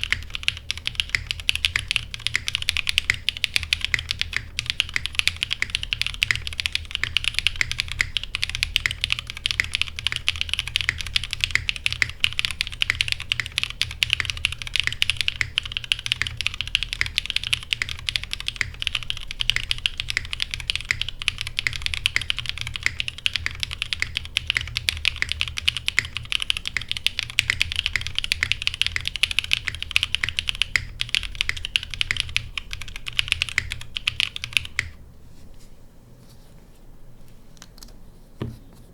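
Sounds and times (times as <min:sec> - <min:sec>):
fast typing on mechanical keyboard: 0:00.0 - 0:35.0.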